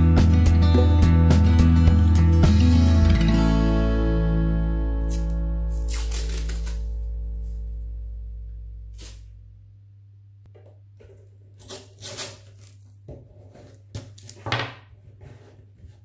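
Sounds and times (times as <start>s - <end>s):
music track: 0.0s - 8.4s
low steady hum: 4.3s - 13.9s.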